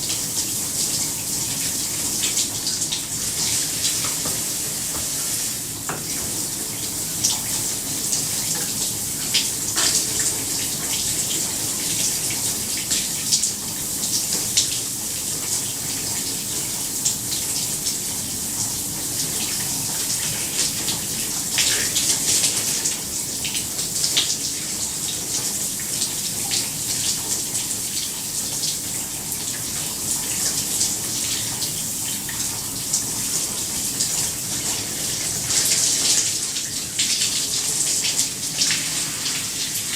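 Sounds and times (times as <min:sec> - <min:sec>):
water splashing and dripping: 0:00.0 - 0:39.9
shower spray hissing: 0:03.1 - 0:08.3, 0:38.5 - 0:39.9.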